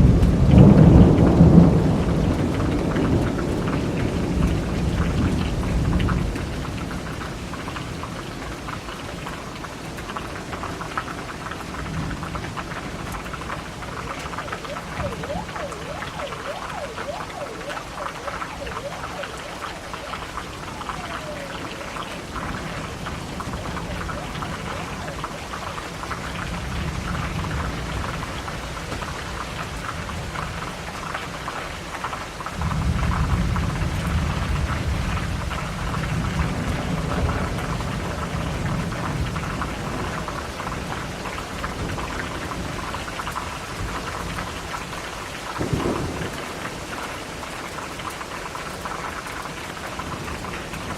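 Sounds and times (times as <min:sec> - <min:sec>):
rolling thunder: 0:00.0 - 0:07.6, 0:11.7 - 0:30.7, 0:32.6 - 0:43.0, 0:45.6 - 0:47.0
steady rain: 0:00.0 - 0:50.9
thunderclap: 0:11.8 - 0:29.4, 0:45.6 - 0:46.9.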